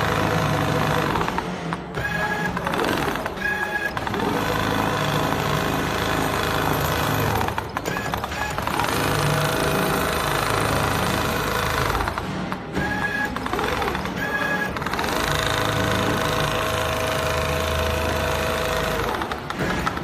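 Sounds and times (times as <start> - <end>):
sewing machine stitching leather: 0.0 - 20.0.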